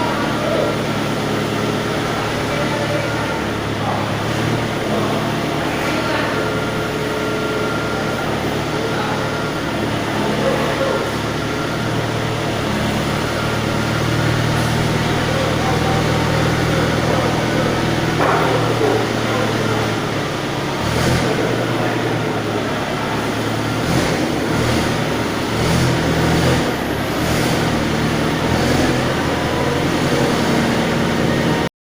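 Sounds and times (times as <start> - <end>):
engine running at low revs: 0.0 - 31.7
knocks and clatters: 18.0 - 19.3.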